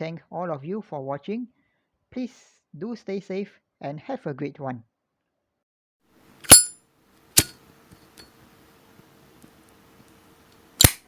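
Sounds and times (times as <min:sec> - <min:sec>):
lighter lid metal clink: 0:06.4 - 0:06.8, 0:07.4 - 0:08.2, 0:10.8 - 0:11.0
lighter spark wheel click: 0:10.8 - 0:11.0.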